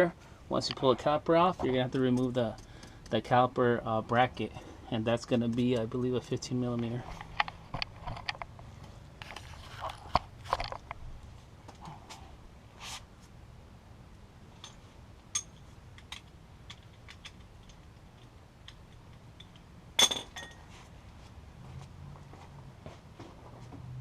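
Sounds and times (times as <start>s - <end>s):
metal tools clinking on steel: 1.6s - 3.2s, 14.6s - 20.7s.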